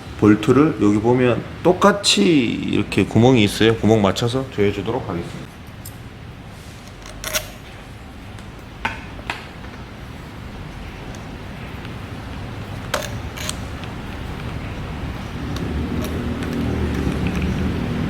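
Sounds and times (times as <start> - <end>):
low background hum: 0.0 - 18.0
hand tool clicking on metal bolt: 12.8 - 14.6.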